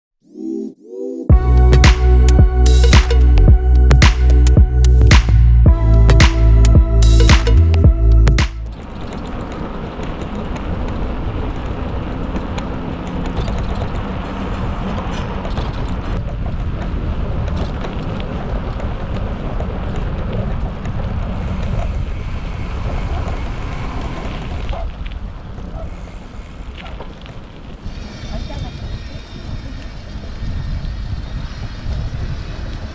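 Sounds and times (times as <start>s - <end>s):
wind rushing over microphone: 27.6s - 32.9s.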